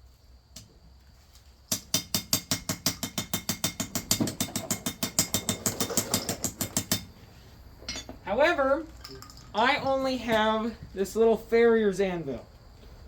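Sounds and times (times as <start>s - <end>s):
hammer tapping on metal anvil: 1.7s - 5.6s, 6.4s - 7.1s.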